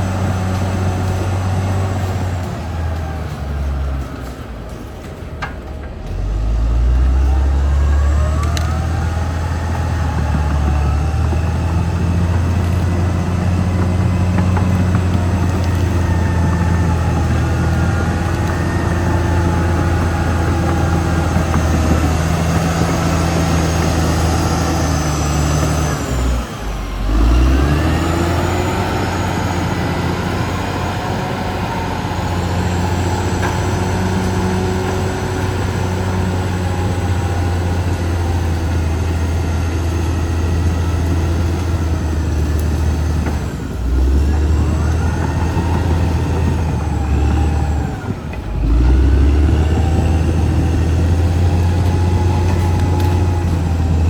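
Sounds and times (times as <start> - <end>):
bulldozer diesel engine revving: 0.0 - 54.0.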